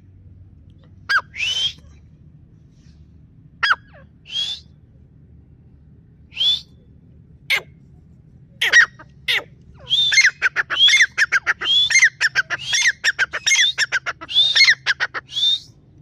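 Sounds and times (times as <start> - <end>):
partridge calling: 8.6 - 15.8.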